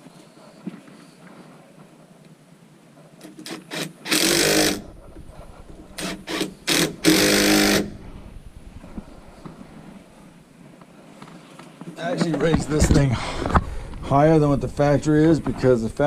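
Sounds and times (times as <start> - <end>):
cordless drill driving screws: 3.2 - 4.9, 6.0 - 8.0.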